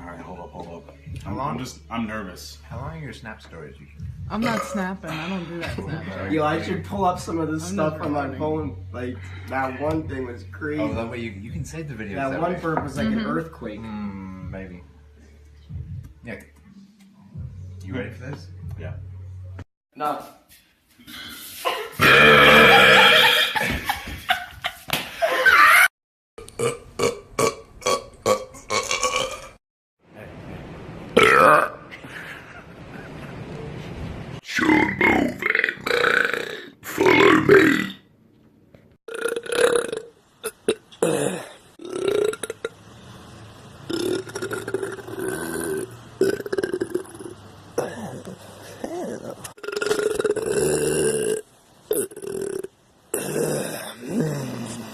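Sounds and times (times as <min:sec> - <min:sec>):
man belching: 0:22.0 - 0:23.6, 0:26.5 - 0:29.6, 0:31.2 - 0:31.8, 0:34.6 - 0:38.0, 0:39.1 - 0:42.8, 0:43.9 - 0:48.4, 0:49.5 - 0:54.9
man burping: 0:22.0 - 0:23.6, 0:26.5 - 0:29.6, 0:31.2 - 0:31.9, 0:34.6 - 0:38.0, 0:39.1 - 0:42.7, 0:43.9 - 0:48.4, 0:49.5 - 0:54.9.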